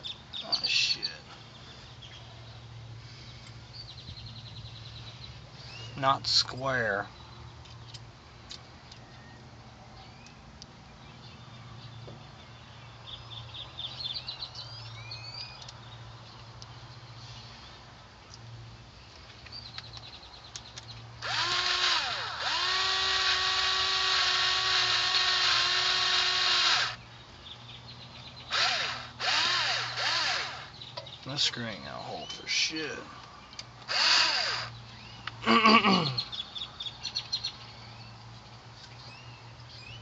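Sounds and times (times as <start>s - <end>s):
power drill motor: 21.2s - 27.0s, 28.5s - 30.7s, 33.8s - 34.8s.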